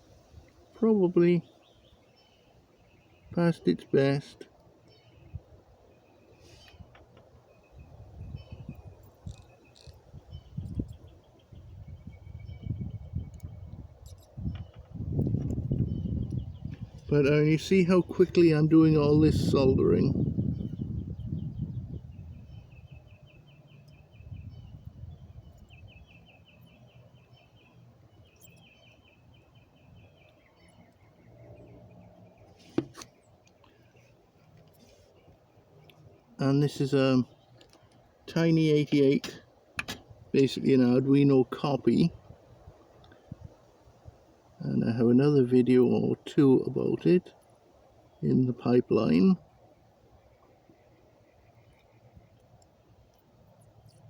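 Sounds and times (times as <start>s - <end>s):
bird chirping: 0.1s - 39.7s, 44.6s - 54.0s
sharp click: 39.2s - 40.0s.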